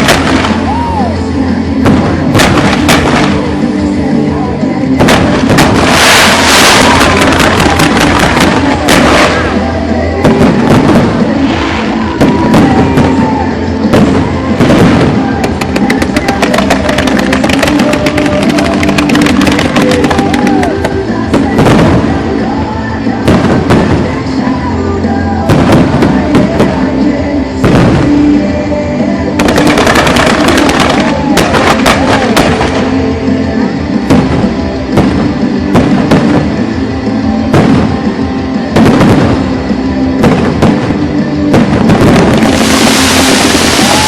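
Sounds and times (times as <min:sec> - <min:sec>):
fireworks crackling and banging: 0:00.0 - 0:44.0
music: 0:00.0 - 0:44.0.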